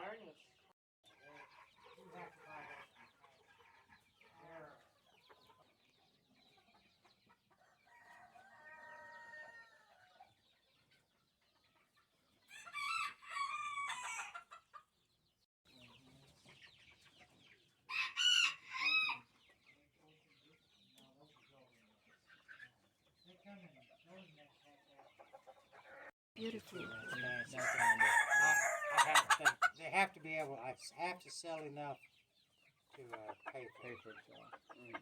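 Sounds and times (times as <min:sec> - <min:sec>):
chickens clucking: 0:00.0 - 0:35.0
roosters crowing: 0:07.6 - 0:10.2, 0:12.5 - 0:14.6, 0:17.9 - 0:19.3, 0:26.7 - 0:29.8.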